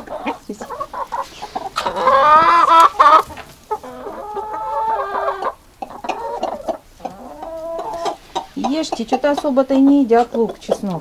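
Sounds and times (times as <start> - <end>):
chickens calling: 0.0 - 11.0.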